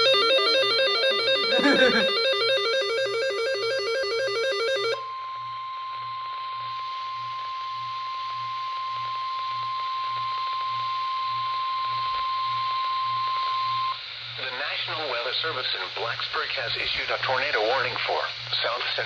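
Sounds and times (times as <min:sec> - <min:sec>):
steady high alarm tone: 0:00.0 - 0:08.2
warbling data tones: 0:01.1 - 0:02.8
radio hiss: 0:14.2 - 0:19.0.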